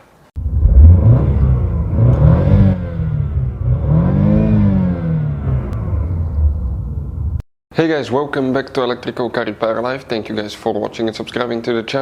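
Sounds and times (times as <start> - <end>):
car engine revving: 0.4 - 7.4.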